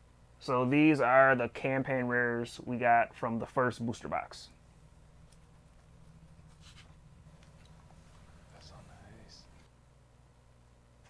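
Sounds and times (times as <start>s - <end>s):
low steady hum: 0.0s - 11.0s
trading cards rustling: 5.2s - 9.6s.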